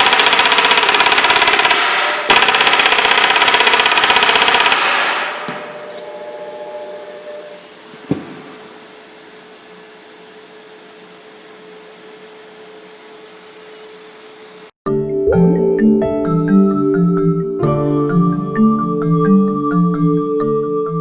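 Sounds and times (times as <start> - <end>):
faint machine hum: 5.4 - 14.7.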